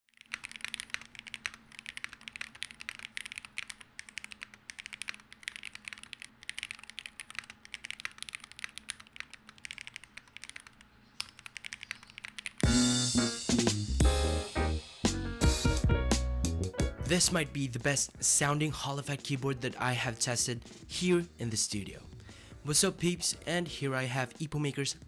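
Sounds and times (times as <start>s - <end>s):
fast keyboard typing: 0.1s - 12.7s.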